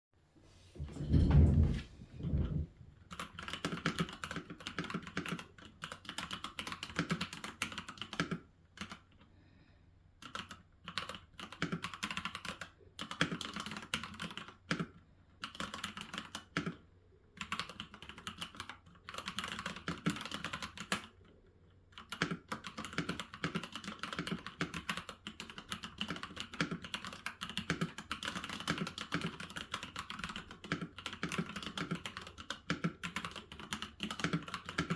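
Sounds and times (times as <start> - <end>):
low thuds: 0.8 - 2.8
computer keyboard typing: 3.1 - 9.2, 10.2 - 34.9.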